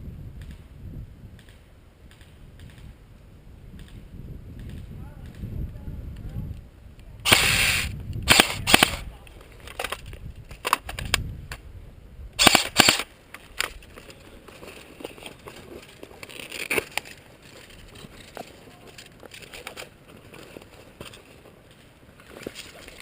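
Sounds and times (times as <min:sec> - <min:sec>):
airsoft guns firing: 0:07.2 - 0:09.0, 0:12.4 - 0:13.1.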